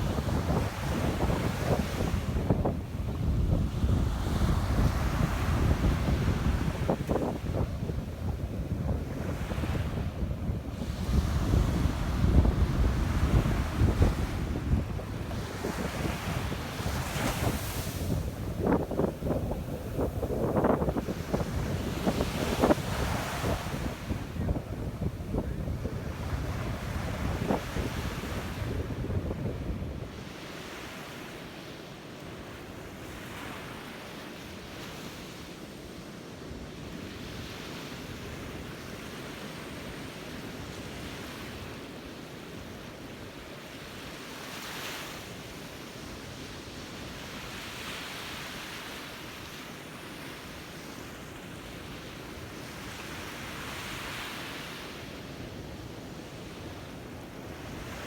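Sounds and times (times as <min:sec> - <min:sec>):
wind buffeting microphone: 0:00.0 - 0:30.1
sea surf washing onto beach: 0:00.0 - 0:31.3.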